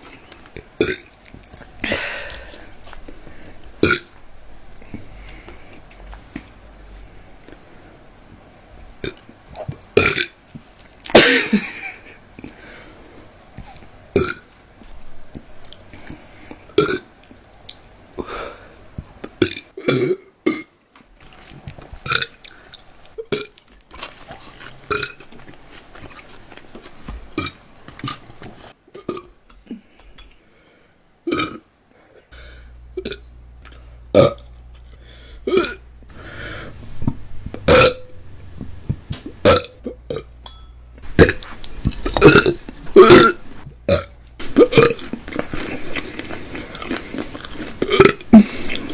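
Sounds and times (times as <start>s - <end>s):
woman burping loudly: 3.8s - 4.1s, 28.9s - 29.3s, 31.3s - 31.7s, 34.1s - 34.5s, 35.4s - 35.8s, 37.6s - 38.1s, 42.2s - 45.1s, 47.8s - 48.9s.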